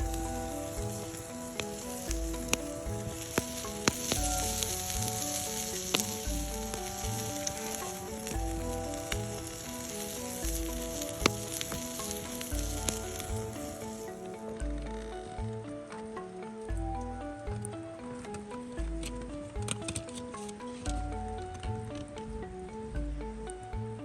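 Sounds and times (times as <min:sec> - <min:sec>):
soft background music: 0:00.0 - 0:24.0
food sizzling in a pan: 0:00.2 - 0:14.2.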